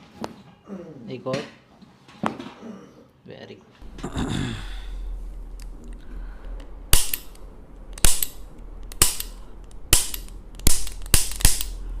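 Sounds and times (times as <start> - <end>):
steady low hum: 3.8 - 12.0.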